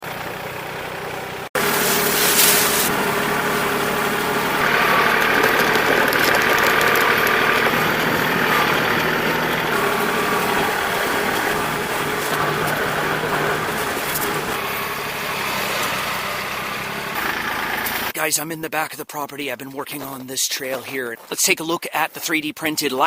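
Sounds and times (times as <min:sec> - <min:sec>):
tractor diesel engine running: 0:00.0 - 0:18.2.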